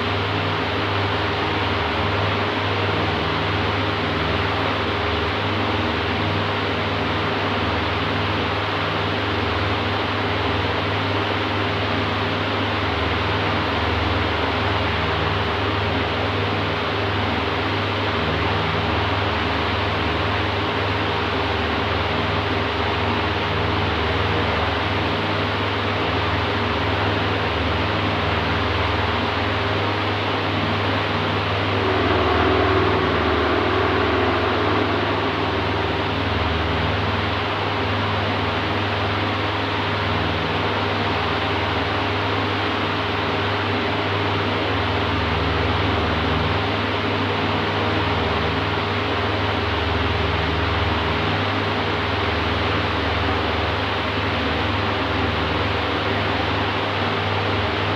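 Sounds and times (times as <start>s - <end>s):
fan motor hum: 29.3s - 38.9s
electric fan air rushing: 30.5s - 38.6s.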